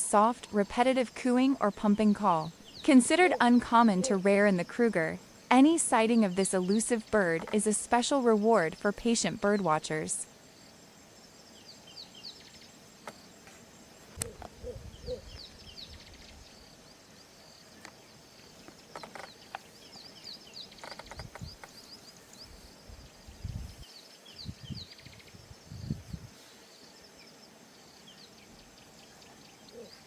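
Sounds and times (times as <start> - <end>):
birds and insects chirping: 0.0 - 30.0
low thuds or croaks: 18.6 - 19.7, 20.7 - 21.8.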